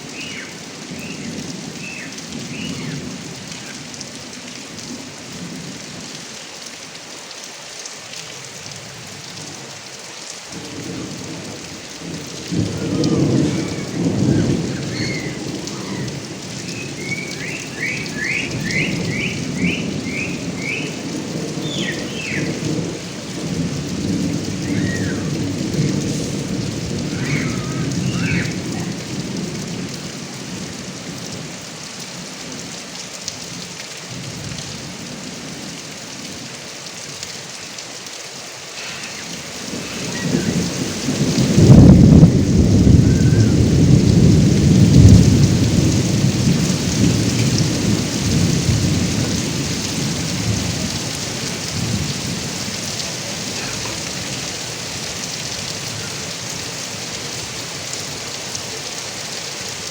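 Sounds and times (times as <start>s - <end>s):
heavy rain on gutter spout: 0.0s - 59.9s
thunder rumbling: 10.6s - 31.5s, 38.8s - 58.2s.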